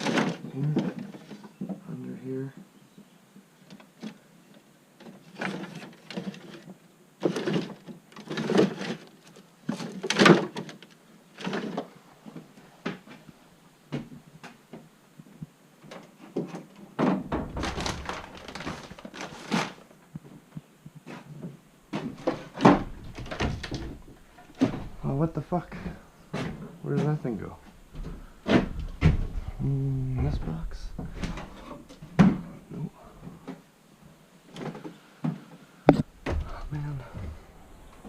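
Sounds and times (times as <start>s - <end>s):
boxes and gear clattering: 5.0s - 12.4s, 16.0s - 19.9s, 21.9s - 32.5s
heavy deep thuds: 21.8s - 33.4s, 35.9s - 38.0s.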